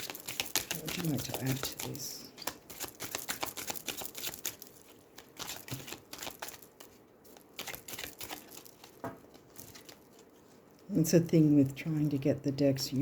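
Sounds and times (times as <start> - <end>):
cards being shuffled: 0.0 - 10.6.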